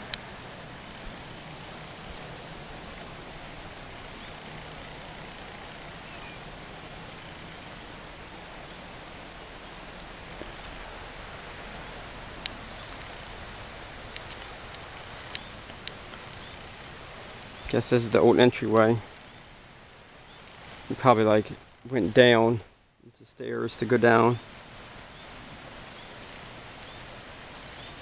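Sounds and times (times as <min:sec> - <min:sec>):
outdoor background noise: 0:00.0 - 0:28.0
faint high-pitched tone: 0:01.1 - 0:13.4.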